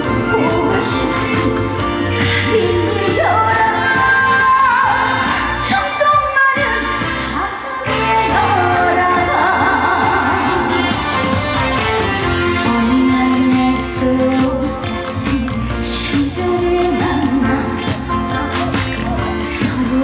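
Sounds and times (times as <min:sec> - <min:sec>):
woman singing: 0:00.0 - 0:20.0
band playing: 0:07.9 - 0:17.4.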